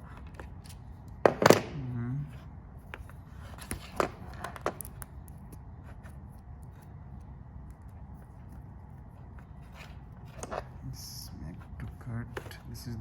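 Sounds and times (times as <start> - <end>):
low steady background noise: 0.0 - 13.0.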